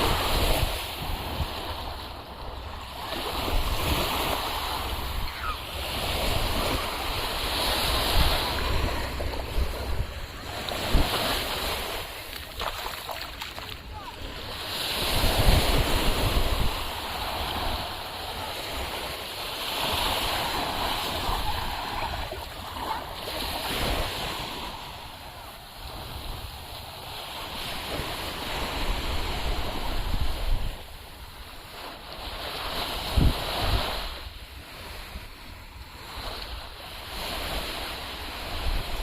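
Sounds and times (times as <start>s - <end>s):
sea surf washing onto beach: 0.0s - 30.9s.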